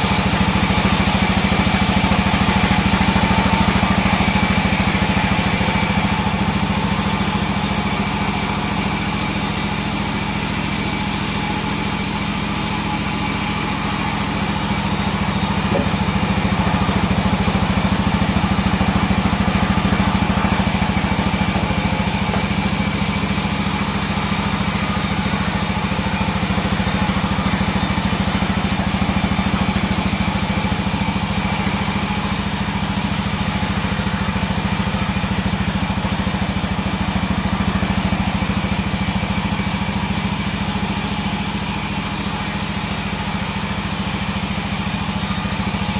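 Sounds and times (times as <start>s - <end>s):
bandsaw humming and whining: 0.0s - 45.9s.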